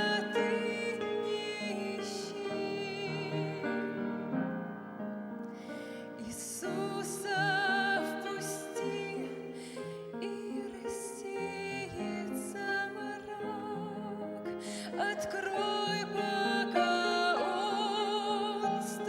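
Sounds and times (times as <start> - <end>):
woman singing with vibrato: 0.0 - 4.2, 6.2 - 19.0.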